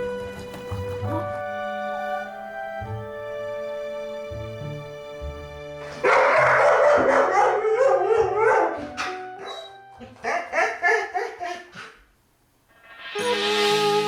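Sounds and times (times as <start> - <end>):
dog whining and yelping: 6.0 - 12.0.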